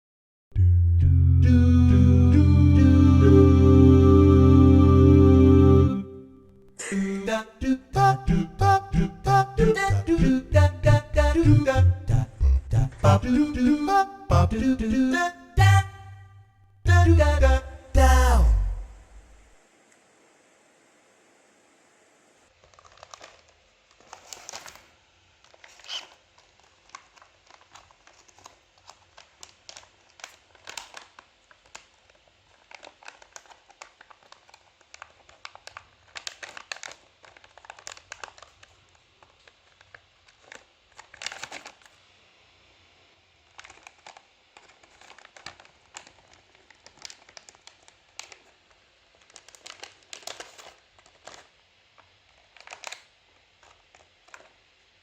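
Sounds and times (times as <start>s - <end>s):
crinkling and rustling: 22.5s - 42.2s, 43.4s - 55.0s.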